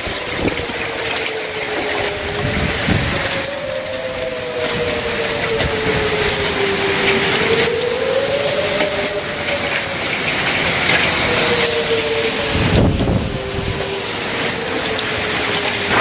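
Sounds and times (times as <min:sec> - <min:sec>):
heavy hail and rain: 0:00.0 - 0:16.0
warning siren wailing: 0:00.0 - 0:16.0
thunder clap: 0:15.7 - 0:16.0.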